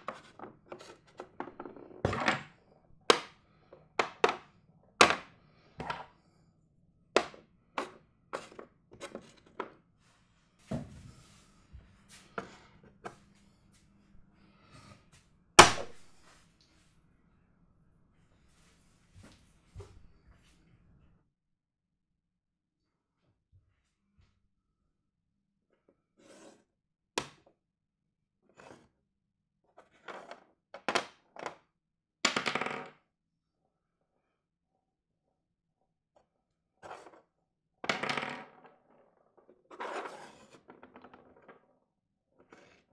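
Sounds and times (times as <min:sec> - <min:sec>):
pieces sliding on board: 0:00.0 - 0:02.4, 0:07.2 - 0:09.8, 0:26.2 - 0:26.6, 0:28.6 - 0:28.9, 0:39.7 - 0:41.2, 0:42.4 - 0:42.9
chess pieces knocking on board: 0:03.1 - 0:03.4, 0:04.0 - 0:06.1, 0:32.3 - 0:33.0, 0:37.9 - 0:38.7.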